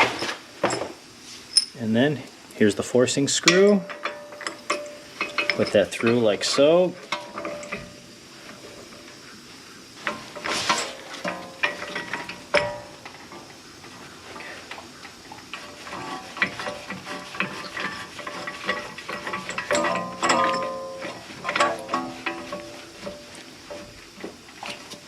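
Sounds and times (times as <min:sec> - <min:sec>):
metal tool parts clinking: 0:01.5 - 0:01.8, 0:03.4 - 0:07.9, 0:17.7 - 0:22.7.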